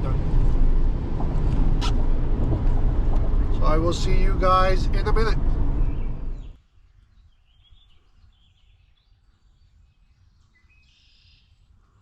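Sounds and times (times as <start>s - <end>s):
low outdoor rumble: 0.0s - 6.6s
birds chirping: 3.6s - 6.6s.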